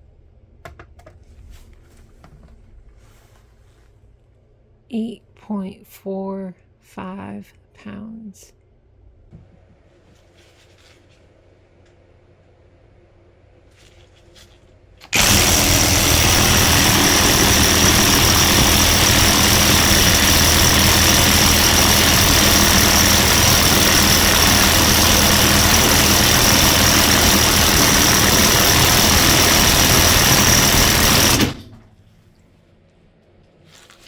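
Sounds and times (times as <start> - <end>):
impact wrench rattling: 15.1 - 31.9.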